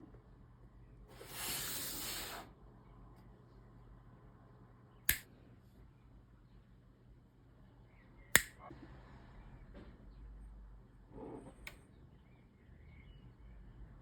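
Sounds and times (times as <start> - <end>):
sharp click: 5.1 - 5.3, 8.4 - 8.6.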